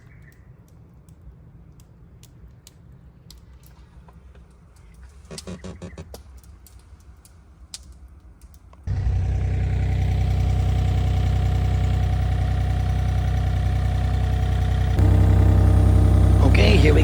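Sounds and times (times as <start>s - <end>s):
work machine engine idling: 8.9s - 17.0s.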